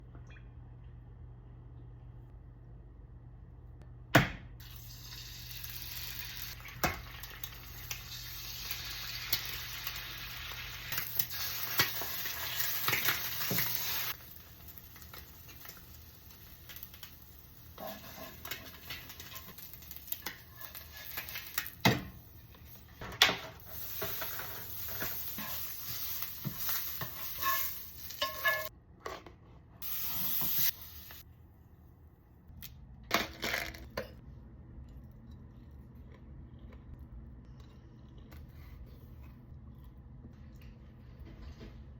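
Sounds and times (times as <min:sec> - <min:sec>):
food sizzling in a frying pan: 0:04.6 - 0:22.3, 0:23.6 - 0:28.7, 0:29.8 - 0:31.2
utensils clinking against dishes: 0:27.0 - 0:28.7.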